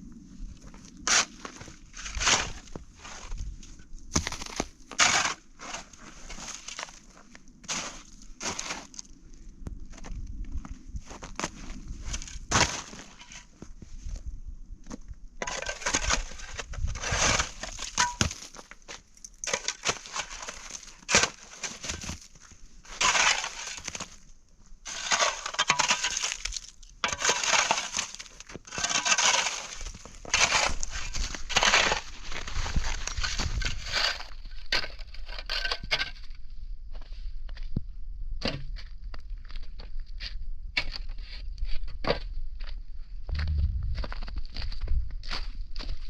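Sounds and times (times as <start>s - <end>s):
crunching scraping strokes: 0.6s - 9.1s, 15.4s - 24.2s, 24.8s - 35.8s.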